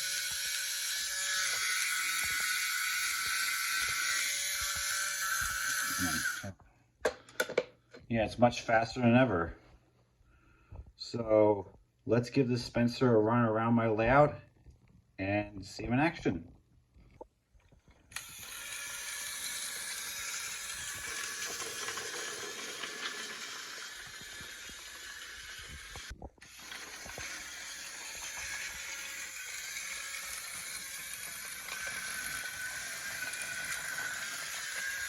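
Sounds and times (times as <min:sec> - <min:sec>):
toy train motor whirring: 0:00.0 - 0:06.5, 0:18.1 - 0:35.0.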